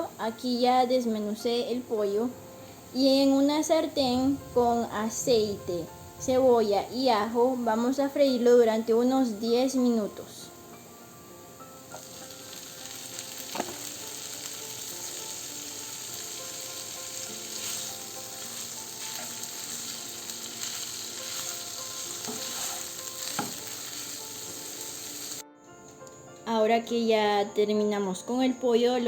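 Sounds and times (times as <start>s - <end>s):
chicken sizzling in oil: 11.6s - 25.4s.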